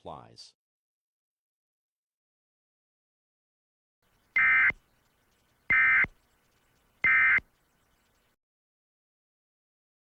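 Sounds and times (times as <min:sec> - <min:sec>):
digital data screech bursts: 0:04.4 - 0:04.8, 0:05.7 - 0:06.1, 0:07.0 - 0:07.4.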